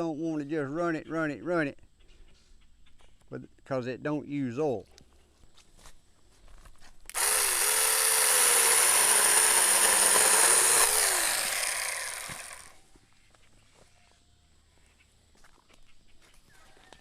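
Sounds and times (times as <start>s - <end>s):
cordless chainsaw cutting a limb: 7.1s - 12.8s.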